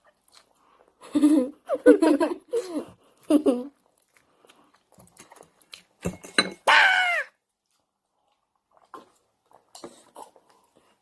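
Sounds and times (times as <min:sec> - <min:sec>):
utensils clinking against dishes: 0:06.0 - 0:06.7.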